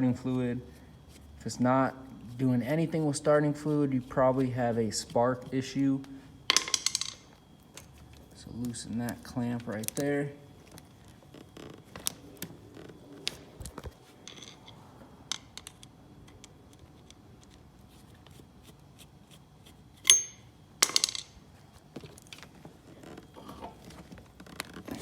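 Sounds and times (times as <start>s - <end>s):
ringing metal clink: 20.1s - 21.2s.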